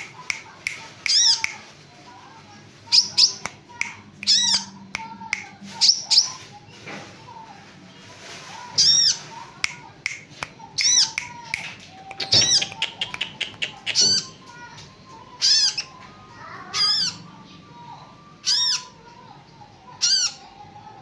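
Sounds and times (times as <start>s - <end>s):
bird high chirps: 0.0s - 1.6s, 2.9s - 4.8s, 5.8s - 6.4s, 8.8s - 9.2s, 10.1s - 14.5s, 15.4s - 16.0s, 16.8s - 17.2s, 18.4s - 18.9s.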